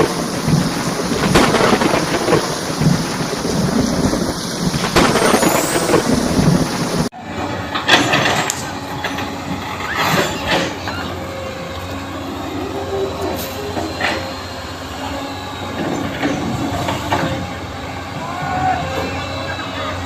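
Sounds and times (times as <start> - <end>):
heavy machinery humming: 0.0 - 20.0
clanks and scrapes: 7.5 - 9.3.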